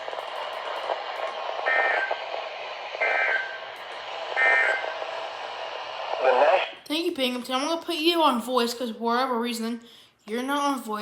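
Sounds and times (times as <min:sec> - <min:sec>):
radio hiss: 0:00.0 - 0:06.8.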